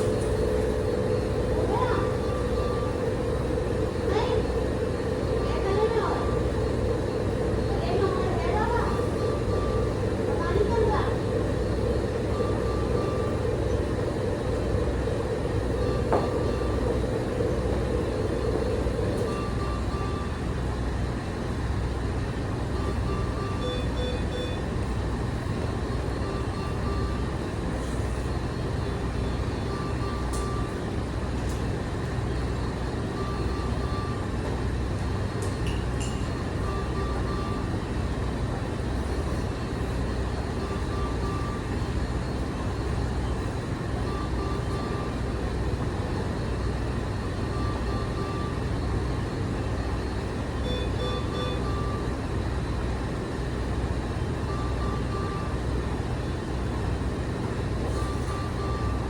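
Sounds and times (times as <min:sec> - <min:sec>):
medical equipment humming: 0:00.0 - 0:59.0
short electronic beep: 0:50.6 - 0:52.1.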